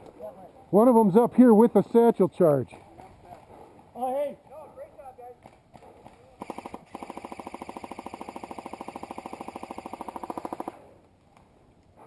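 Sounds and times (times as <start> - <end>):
airsoft gun firing full auto: 6.4 - 10.8.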